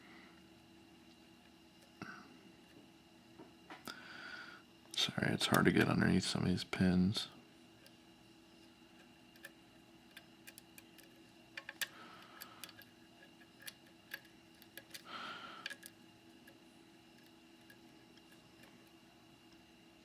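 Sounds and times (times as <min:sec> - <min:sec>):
lock pick clicking and scraping: 0:09.3 - 0:18.9.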